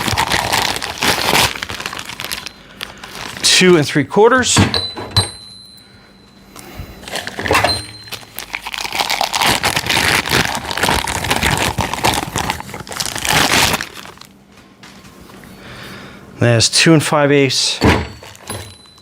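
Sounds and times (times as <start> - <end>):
crinkling wrapping rustling: 0.0 - 4.0, 7.0 - 15.1, 18.1 - 19.0.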